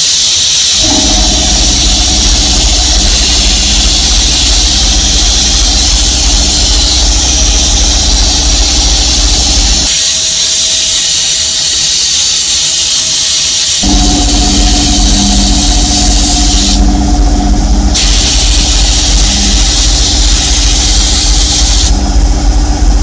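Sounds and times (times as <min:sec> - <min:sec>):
machine hissing: 0:00.0 - 0:23.0
machine low hum: 0:00.8 - 0:10.0, 0:13.8 - 0:23.0.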